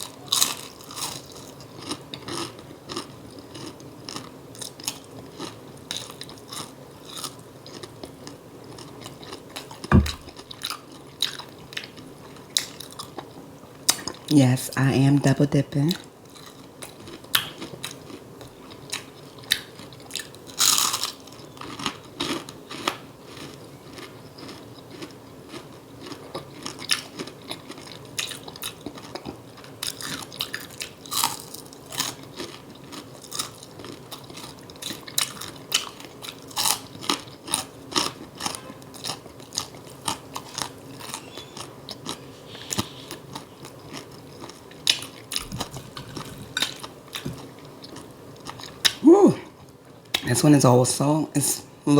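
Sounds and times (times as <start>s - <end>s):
crunching bites of fried food: 0.0s - 13.3s, 16.3s - 49.1s
chewing and lip smacking: 16.0s - 50.3s.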